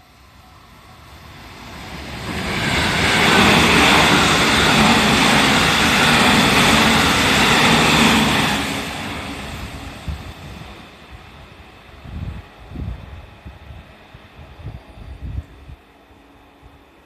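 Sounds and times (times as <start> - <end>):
electric train passing: 0.0 - 17.0.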